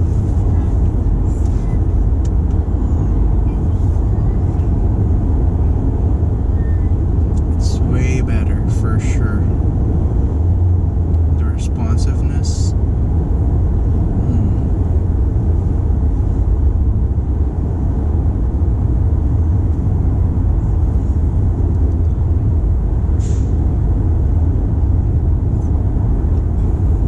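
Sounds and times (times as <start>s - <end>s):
car driving road rumble: 0.0s - 27.0s.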